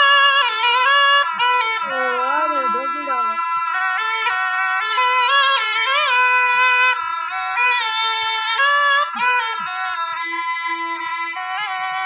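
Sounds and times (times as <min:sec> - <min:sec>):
steady drone: 0:00.0 - 0:11.6
high bending folk melody: 0:00.0 - 0:12.0.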